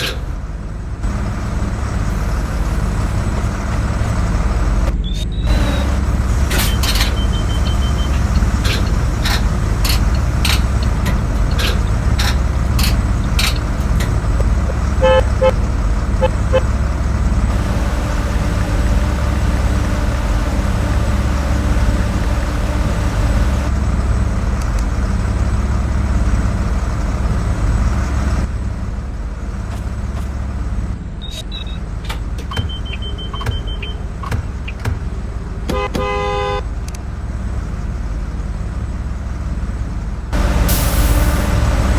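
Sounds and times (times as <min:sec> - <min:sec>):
bus engine and road rumble: 0:00.0 - 0:41.9
bus horn toots: 0:02.1 - 0:04.3, 0:05.4 - 0:08.2, 0:14.8 - 0:16.8, 0:17.5 - 0:23.7, 0:35.7 - 0:36.7, 0:40.4 - 0:41.9.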